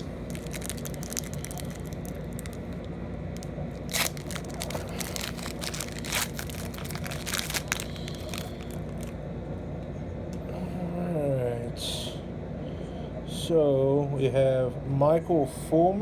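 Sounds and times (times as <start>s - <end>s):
foil wrapper crinkling: 0.0s - 9.2s
foil wrapper ripping: 0.0s - 9.2s.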